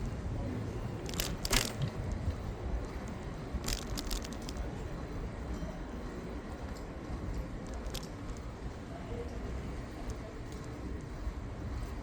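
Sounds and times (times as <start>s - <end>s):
low rumble of bicycle riding: 0.0s - 12.0s
bicycle clicks and rattles: 1.0s - 5.8s, 6.6s - 11.2s.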